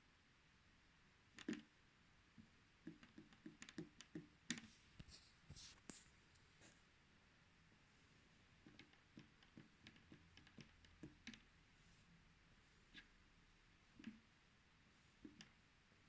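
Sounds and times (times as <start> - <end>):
fingers tapping on smartwatch: 1.4 - 1.7, 2.4 - 5.1, 8.6 - 11.5, 15.2 - 15.6
faint rubbing: 4.6 - 6.9.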